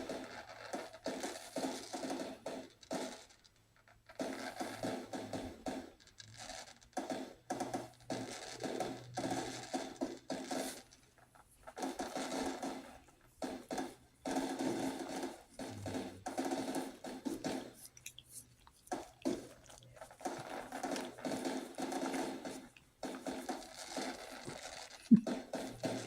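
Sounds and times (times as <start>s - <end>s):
fireworks crackling and rumbling: 0.0s - 26.0s.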